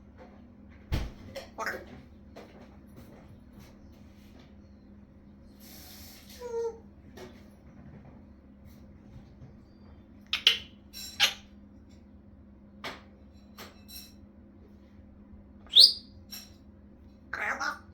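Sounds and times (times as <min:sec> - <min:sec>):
parrot clicks and squawks: 0:10.4 - 0:11.5
parrot rising whistle: 0:15.7 - 0:16.1.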